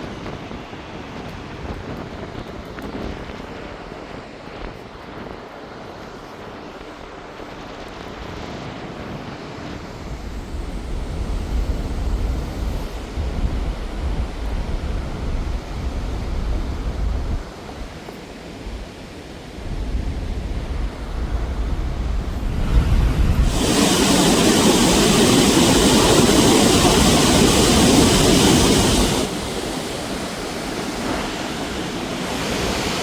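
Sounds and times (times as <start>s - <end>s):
wind buffeting microphone: 0.0s - 33.0s
water pouring over a dam: 23.4s - 33.0s.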